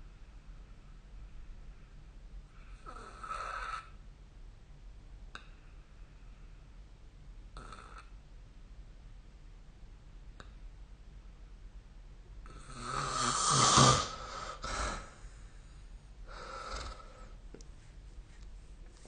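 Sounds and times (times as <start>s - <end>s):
person snoring: 12.5s - 15.2s, 16.3s - 17.4s.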